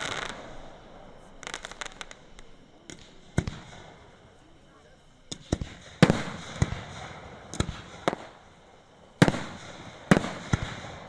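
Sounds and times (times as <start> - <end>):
fireworks bursting: 0.0 - 11.0.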